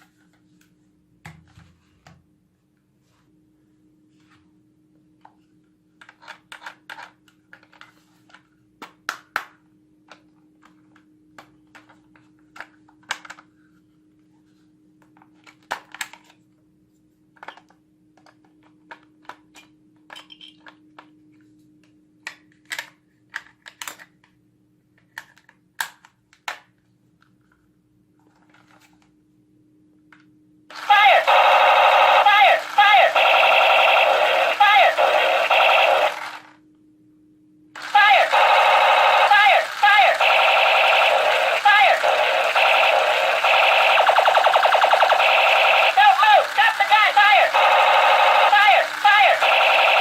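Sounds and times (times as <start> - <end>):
faint steady hum: 26.8 - 50.0
plastic toy guns clicking: 37.8 - 50.0.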